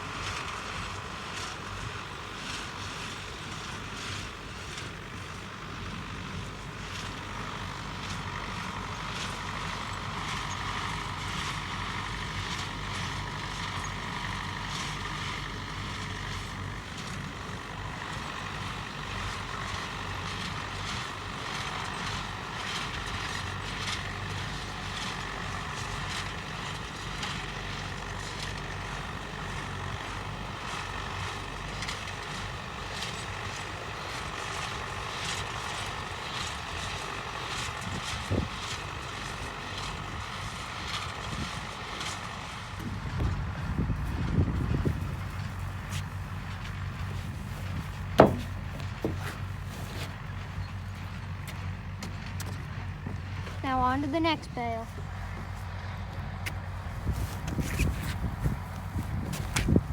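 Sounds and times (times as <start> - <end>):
tractor engine drone: 0.0 - 59.9.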